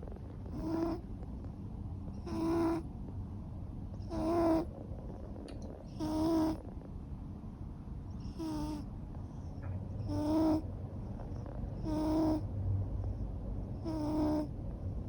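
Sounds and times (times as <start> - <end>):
cat snoring: 0.0 - 1.1, 2.2 - 2.9, 4.0 - 6.9, 8.2 - 12.5, 13.1 - 14.6.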